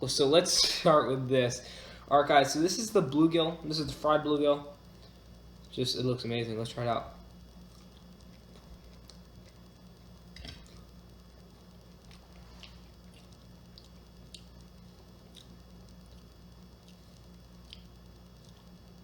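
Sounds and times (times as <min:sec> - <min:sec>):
low steady hum: 0:00.0 - 0:19.0
person chewing crispy food: 0:07.4 - 0:19.0
wet mouth clicks: 0:12.1 - 0:14.7.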